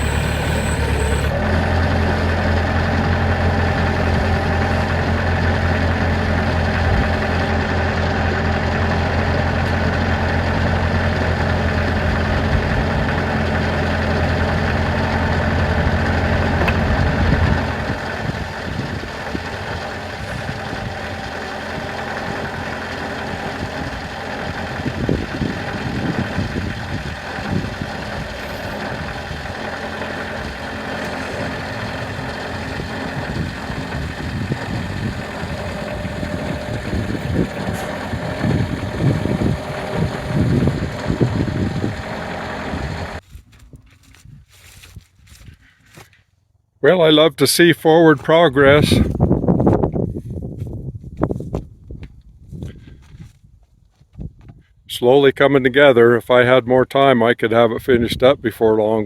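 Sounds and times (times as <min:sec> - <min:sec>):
engine idling: 0:00.0 - 0:46.1.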